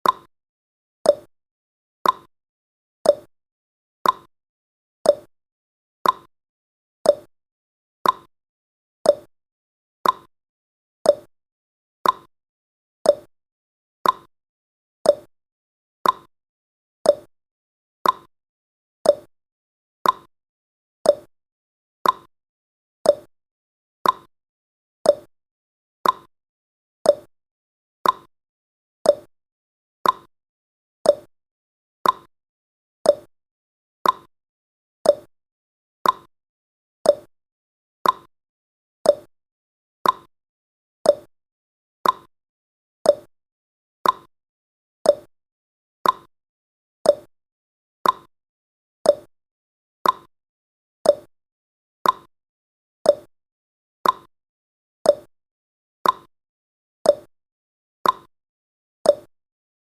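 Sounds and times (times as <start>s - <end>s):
clock ticking: 42.0s - 42.3s.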